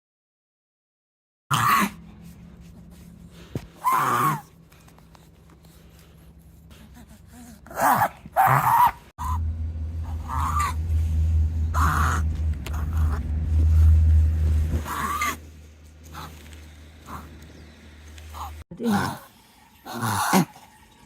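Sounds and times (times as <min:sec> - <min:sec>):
steady low hum: 0:01.9 - 0:18.6.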